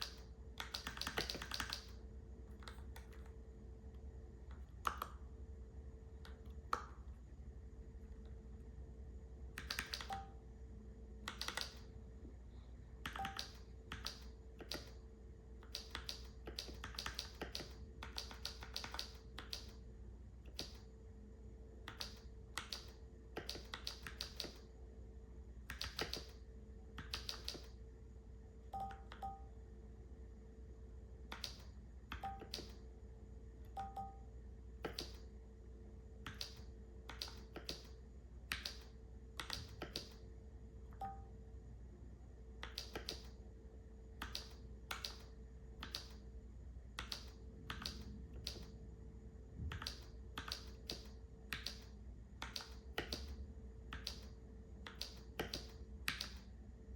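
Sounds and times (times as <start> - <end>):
mechanical keyboard typing: 0.0 - 2.0, 9.6 - 10.3, 11.3 - 11.9, 13.0 - 15.0, 15.6 - 19.8, 21.9 - 24.6, 25.7 - 26.4, 27.0 - 27.7, 49.7 - 53.3.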